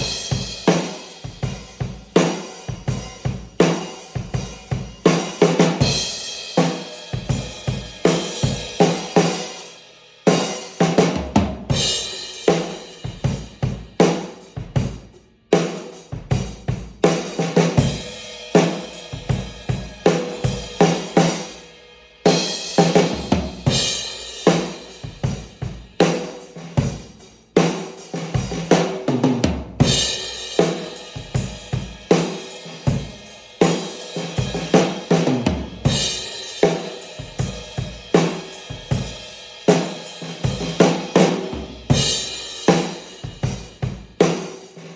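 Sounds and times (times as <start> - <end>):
bass drum: 0.0 - 6.2, 10.9 - 15.1, 16.1 - 21.5, 22.7 - 32.2, 40.4 - 44.5.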